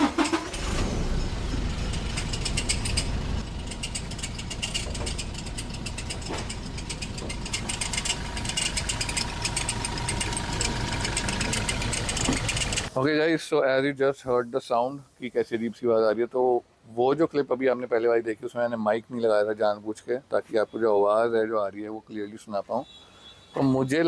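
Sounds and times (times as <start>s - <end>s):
diesel engine idling: 0.0s - 13.0s
rapid ticking rattle from belt drive: 1.7s - 12.9s.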